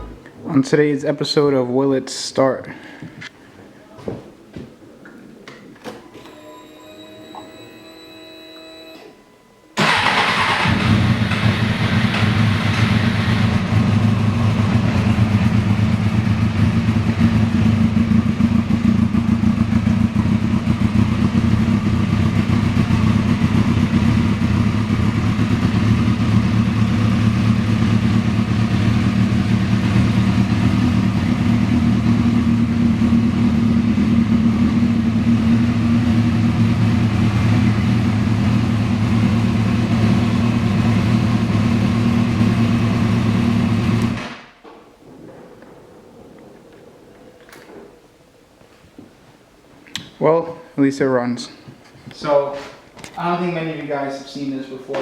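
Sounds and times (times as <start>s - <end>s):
motorcycle engine running: 0.0s - 0.2s, 9.8s - 44.2s.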